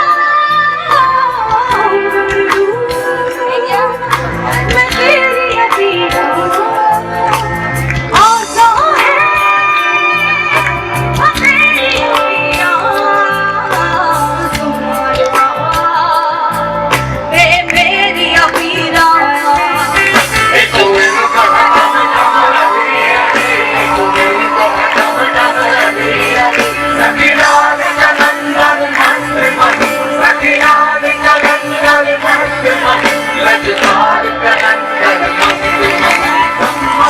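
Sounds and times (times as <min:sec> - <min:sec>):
live band music: 0:00.0 - 0:37.0.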